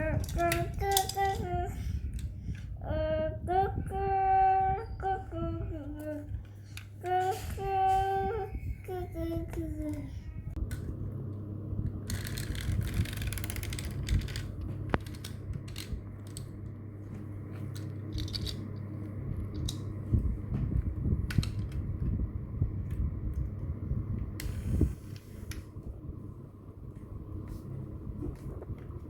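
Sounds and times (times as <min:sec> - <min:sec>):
toys rattling: 0:00.0 - 0:02.6, 0:12.1 - 0:16.5, 0:17.7 - 0:18.8
steady low hum: 0:00.0 - 0:29.0
toys clicking and knocking: 0:00.1 - 0:01.4.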